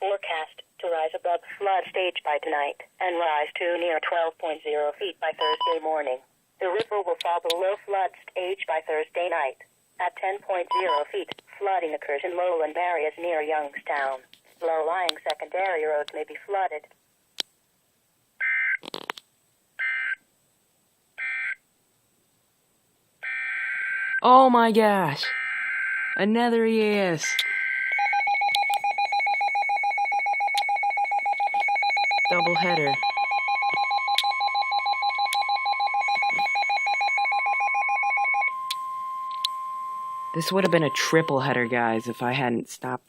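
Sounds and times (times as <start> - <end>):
steady warning alarm tone: 25.2 - 42.5
rapid pulsing alarm beep: 27.3 - 42.5
clicks: 38.7 - 39.6.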